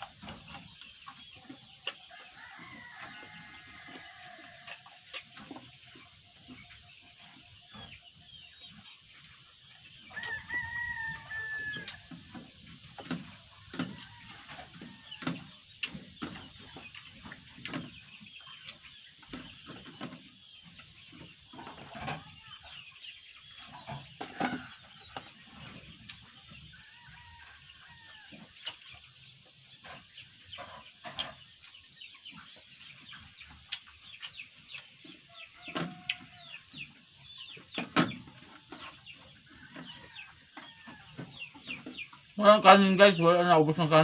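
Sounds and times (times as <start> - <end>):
chewing and smacking: 0.0 - 5.7, 15.5 - 18.9, 33.5 - 35.2
chickens clucking: 0.0 - 44.0.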